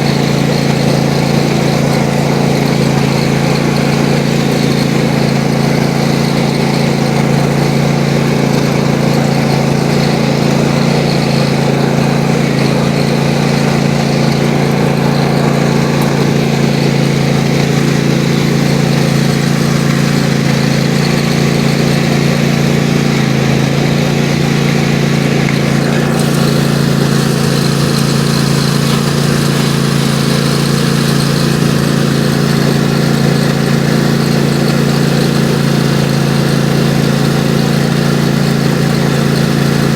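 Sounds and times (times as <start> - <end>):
riding lawn mower engine: 0.0 - 39.9.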